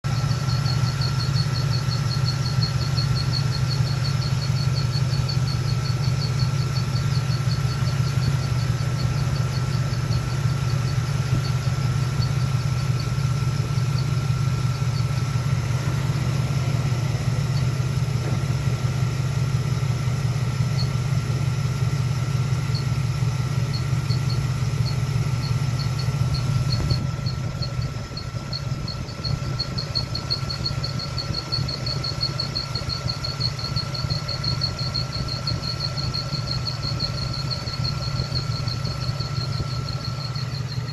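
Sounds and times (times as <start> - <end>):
car engine idling: 0.0 - 40.9
high-pitched rhythmic squeak: 23.7 - 40.9.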